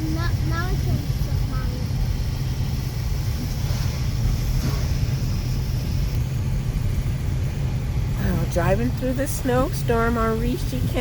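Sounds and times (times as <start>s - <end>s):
air and road noise hiss: 0.0s - 11.0s
car engine rumble from inside: 0.0s - 11.0s.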